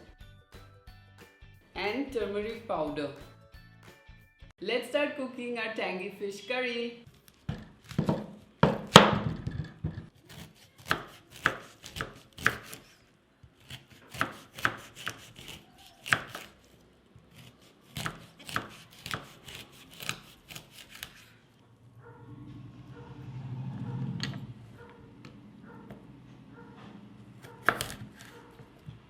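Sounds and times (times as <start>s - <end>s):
knife chopping on cutting board: 7.2s - 12.9s, 13.6s - 16.6s, 17.3s - 21.3s, 27.4s - 29.0s.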